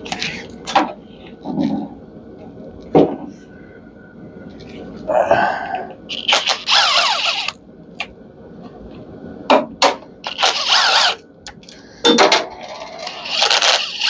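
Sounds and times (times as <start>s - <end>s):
power drill whirring: 6.1s - 7.6s, 10.3s - 11.2s, 12.9s - 14.0s.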